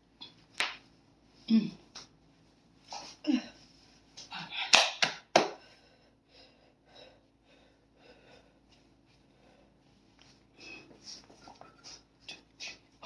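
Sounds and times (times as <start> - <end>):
sharp smacks: 4.7 - 5.6.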